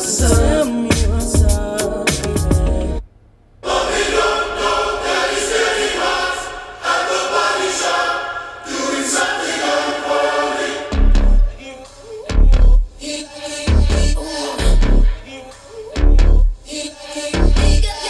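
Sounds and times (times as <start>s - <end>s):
choir-like vocals: 0.0s - 3.0s, 3.6s - 18.0s
music over car stereo: 0.0s - 18.0s
heavy bass hit: 0.2s - 3.1s.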